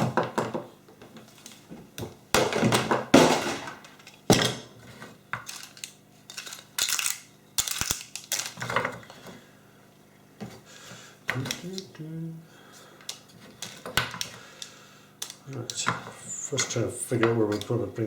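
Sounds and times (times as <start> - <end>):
tools clattering on a workbench: 2.4 - 9.2.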